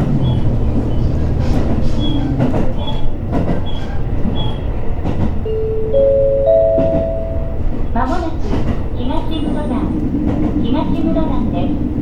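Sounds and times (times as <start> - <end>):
track knocks: 0.0 - 5.5, 6.5 - 10.7
railcar wheels rumbling: 0.0 - 12.0
chime of steady tones: 5.5 - 7.7.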